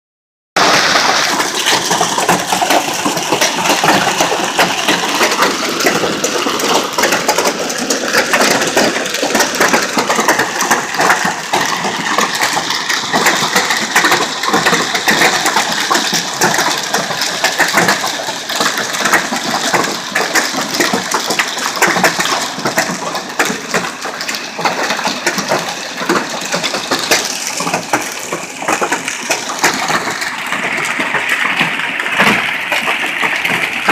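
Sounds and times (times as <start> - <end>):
rain hissing: 0.6 - 16.9
hailstones clattering: 0.6 - 33.9.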